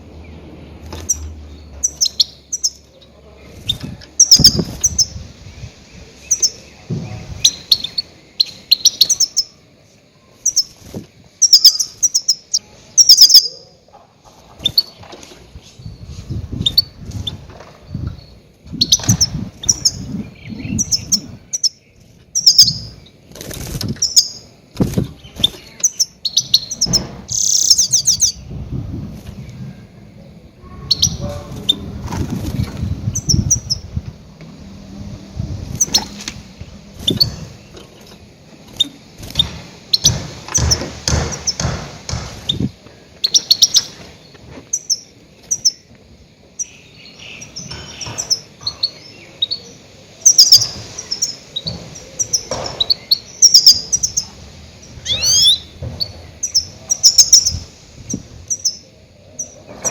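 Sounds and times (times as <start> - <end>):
bird chirping: 0.0 - 28.6, 32.5 - 34.2, 35.6 - 36.3, 37.0 - 59.9
wings fluttering thumps: 24.7 - 25.7, 31.6 - 33.2, 35.6 - 42.7.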